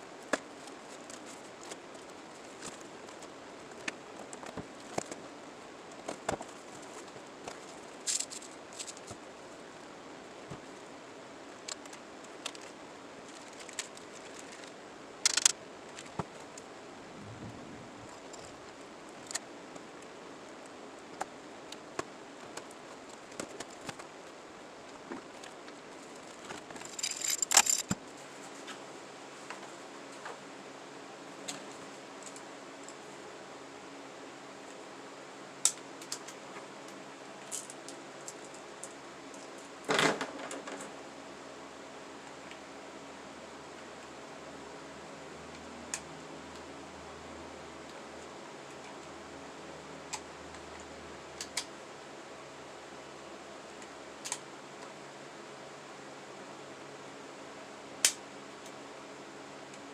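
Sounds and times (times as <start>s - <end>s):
steady background hiss: 0.0s - 59.9s.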